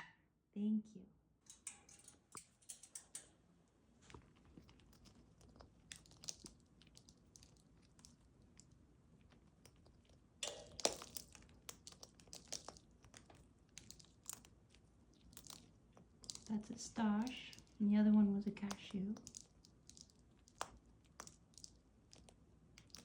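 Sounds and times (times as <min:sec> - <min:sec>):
parrot cracking nut: 0:04.5 - 0:17.8, 0:18.7 - 0:23.0.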